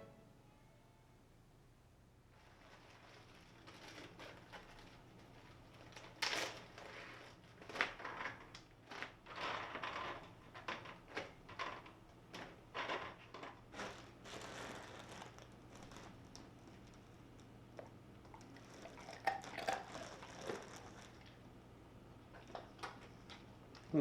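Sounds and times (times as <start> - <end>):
dog chewing crunches: 13.8 - 21.4.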